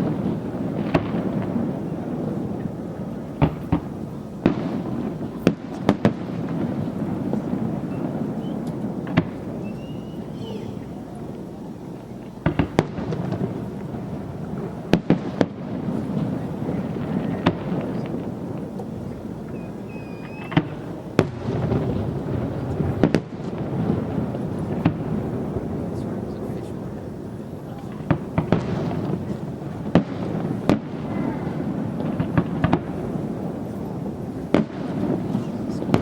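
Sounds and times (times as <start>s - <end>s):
firework bangs: 0.0s - 36.0s
rumble of distant firework bursts: 0.0s - 36.0s
firework whistles: 6.8s - 11.3s, 19.1s - 21.4s.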